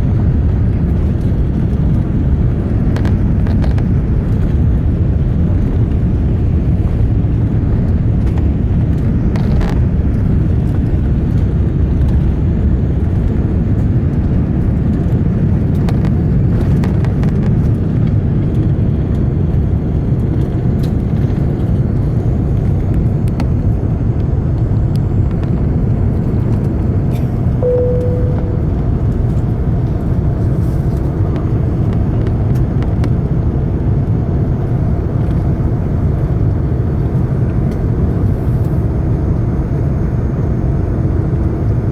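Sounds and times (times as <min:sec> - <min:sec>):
deep rumble of airplane cabin: 0:00.0 - 0:41.9
short single tone: 0:27.6 - 0:29.6.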